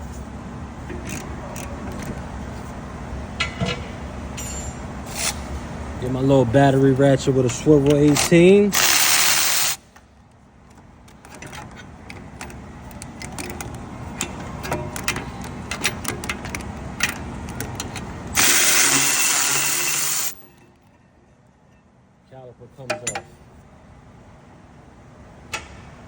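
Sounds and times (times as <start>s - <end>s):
cordless ratchet spinning bolts: 1.0s - 2.2s, 7.8s - 9.8s, 11.1s - 20.6s.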